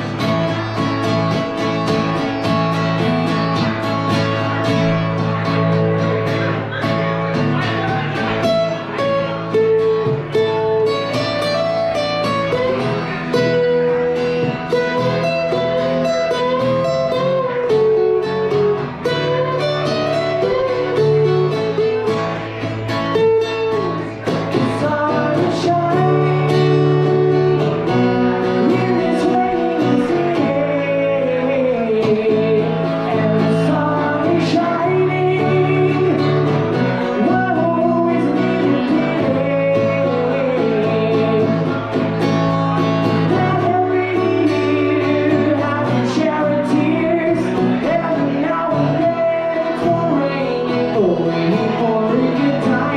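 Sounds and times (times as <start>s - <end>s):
acoustic guitar: 0.0s - 52.9s
man singing: 0.0s - 52.9s.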